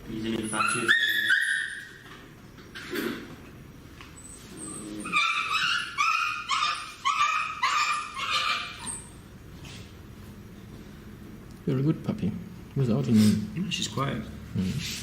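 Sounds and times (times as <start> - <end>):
puppy yelping: 0.4 - 2.1, 4.2 - 9.2.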